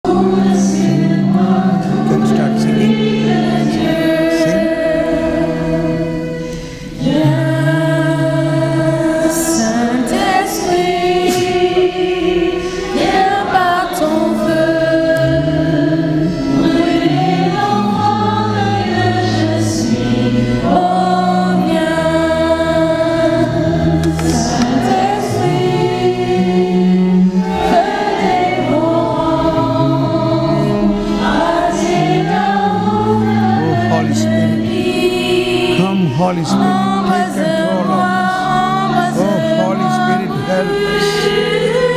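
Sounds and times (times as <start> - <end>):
group singing worship song: 0.0 - 41.9
instrumental accompaniment: 0.1 - 41.9.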